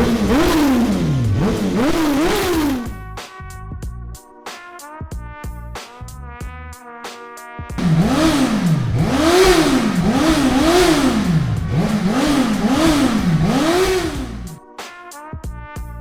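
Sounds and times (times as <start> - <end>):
motorcycle engine revving: 0.0 - 3.0, 7.8 - 14.6.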